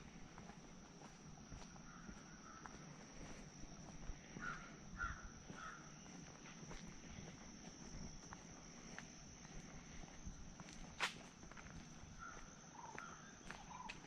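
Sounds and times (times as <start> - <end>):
crow cawing: 1.9 - 2.7, 4.4 - 5.9, 12.2 - 13.9.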